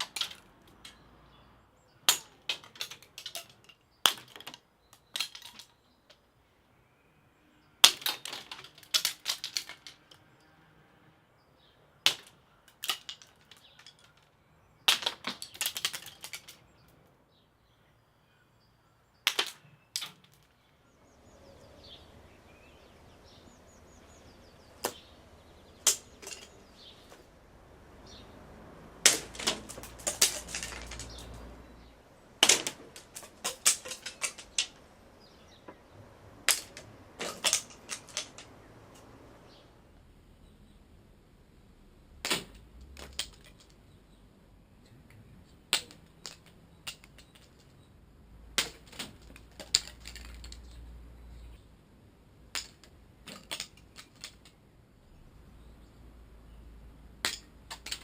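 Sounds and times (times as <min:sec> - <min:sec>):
seed pods bursting with cracks: 0:07.8 - 0:10.0, 0:12.0 - 0:16.7, 0:19.2 - 0:20.6, 0:24.0 - 0:27.2, 0:29.0 - 0:38.6.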